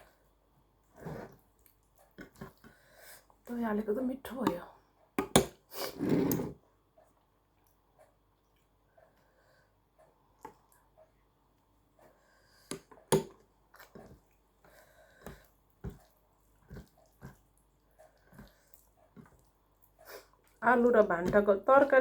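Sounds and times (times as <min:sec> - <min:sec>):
wet chewing and mouth smacks: 0:13.6 - 0:14.6, 0:15.4 - 0:20.6.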